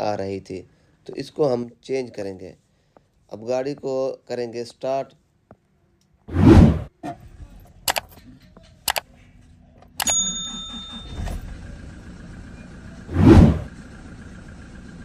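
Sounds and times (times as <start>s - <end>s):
loud rushing sound: 6.3s - 6.9s, 13.1s - 13.7s
sharp clicks: 7.9s - 8.2s
diesel engine starting and idling: 9.8s - 15.0s
short chime: 10.0s - 11.5s.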